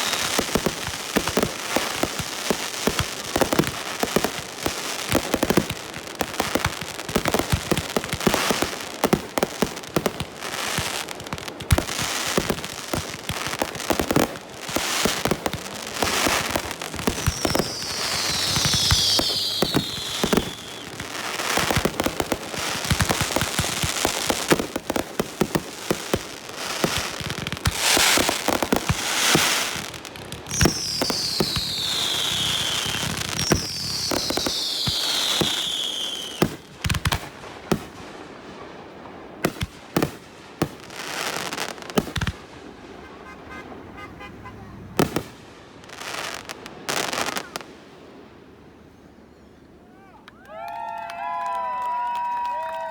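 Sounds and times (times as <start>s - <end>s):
firework whistles falling in pitch: 0.0s - 0.4s, 17.1s - 21.0s, 30.5s - 36.5s
fireworks bangs and crackling: 0.0s - 49.1s.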